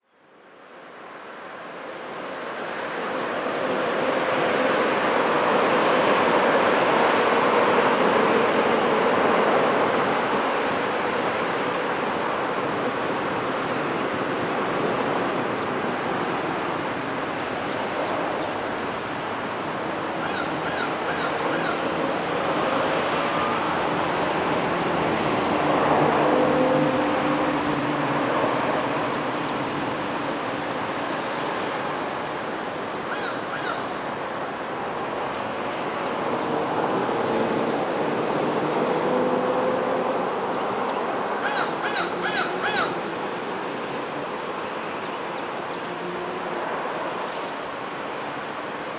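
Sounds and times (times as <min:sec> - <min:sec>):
road traffic passing: 0:02.2 - 0:48.9
bird calls: 0:20.0 - 0:22.1, 0:32.9 - 0:34.0, 0:40.8 - 0:43.4.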